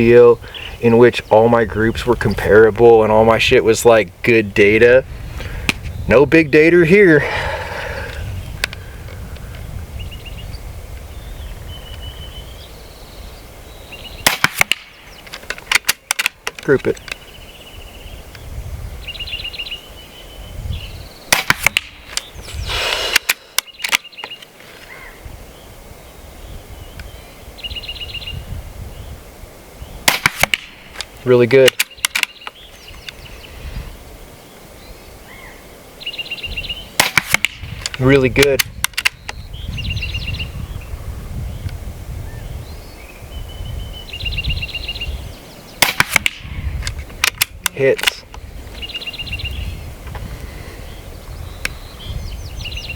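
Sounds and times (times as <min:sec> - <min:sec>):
bird chirping: 0:00.0 - 0:03.2, 0:09.9 - 0:30.1, 0:30.7 - 0:37.0, 0:37.6 - 0:46.8, 0:47.6 - 0:52.9
wind rumbling on microphone: 0:00.0 - 0:52.9
air pistol crack: 0:14.2 - 0:17.2, 0:21.3 - 0:24.4, 0:30.0 - 0:32.5, 0:37.0 - 0:39.2, 0:45.8 - 0:48.4
short air hiss: 0:22.4 - 0:24.0.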